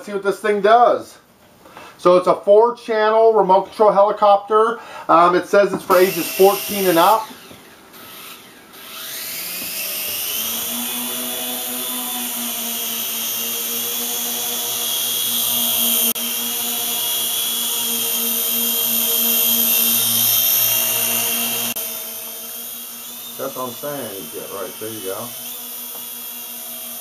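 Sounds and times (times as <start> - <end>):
toy helicopter motors whining: 5.8 - 27.0.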